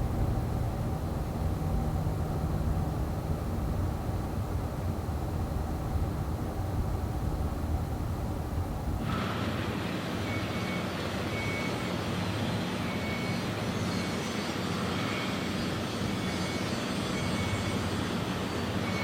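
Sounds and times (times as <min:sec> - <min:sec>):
heavy machinery humming: 0:00.0 - 0:09.1.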